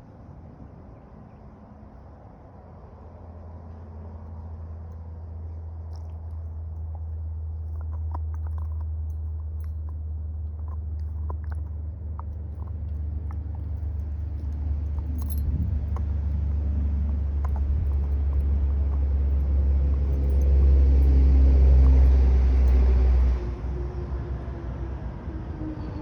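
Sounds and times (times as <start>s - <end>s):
vehicle engine rumble: 0.0s - 26.0s.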